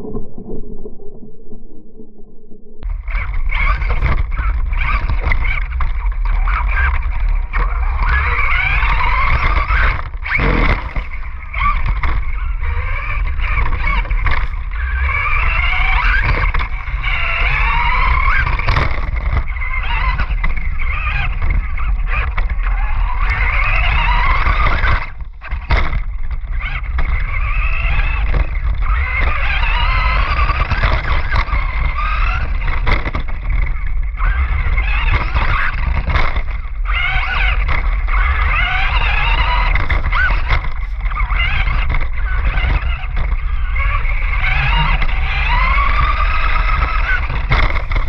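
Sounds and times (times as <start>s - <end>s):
steady low rumble: 0.0s - 8.4s
rc car motor whining: 3.1s - 48.0s.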